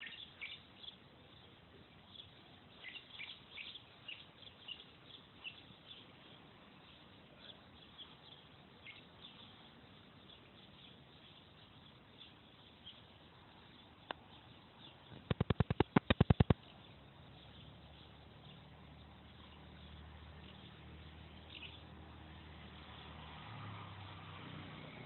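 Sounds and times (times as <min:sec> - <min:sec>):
flock of birds chirping: 0:00.0 - 0:23.5.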